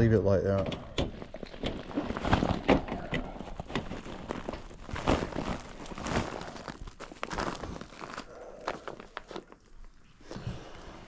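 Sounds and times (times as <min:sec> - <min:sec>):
handling clicks and knocks: 0:00.4 - 0:05.3
rustling: 0:00.9 - 0:11.0.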